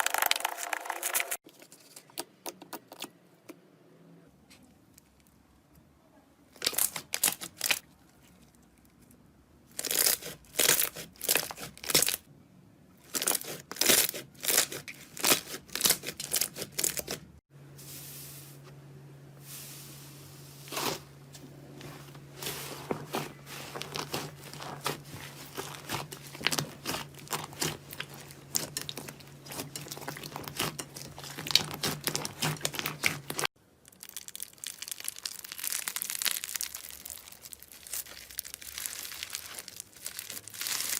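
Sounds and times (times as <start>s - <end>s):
slime squishing and crackling: 9.7s - 12.2s, 13.1s - 17.2s, 22.4s - 40.9s.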